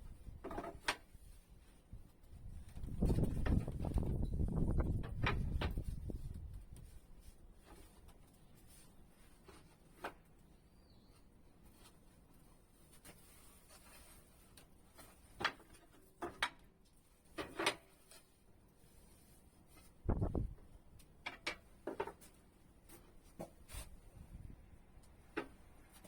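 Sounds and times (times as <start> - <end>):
wood knocking and clattering: 21.2 - 22.3.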